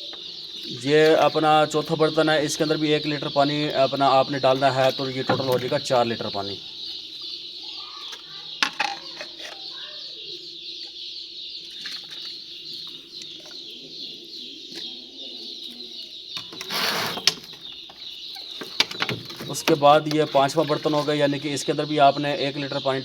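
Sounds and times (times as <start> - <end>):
chicks peeping: 0.0 - 23.0.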